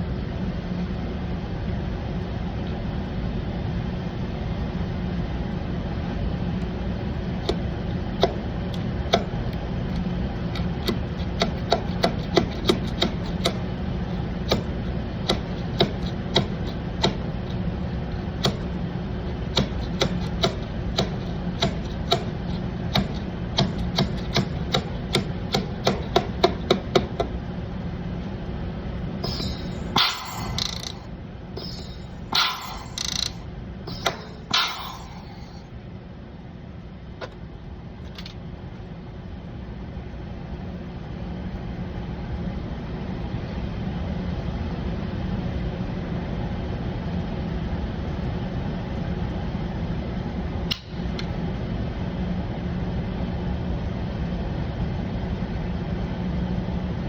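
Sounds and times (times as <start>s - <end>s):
low hum: 3.5s - 36.0s
hand tool tapping on metal panel: 10.6s - 13.6s, 19.5s - 27.3s.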